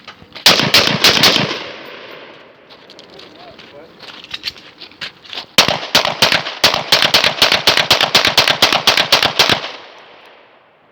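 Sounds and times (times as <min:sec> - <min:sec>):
rapid gunfire: 0:00.4 - 0:01.7, 0:05.6 - 0:09.8.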